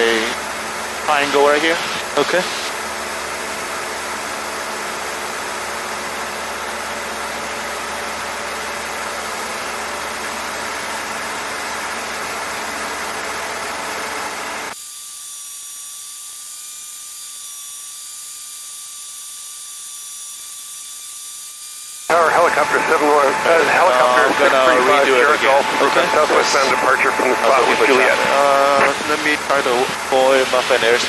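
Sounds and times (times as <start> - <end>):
airplane engine and propeller drone: 22.1 - 31.0
faint high-pitched whine: 22.1 - 31.0.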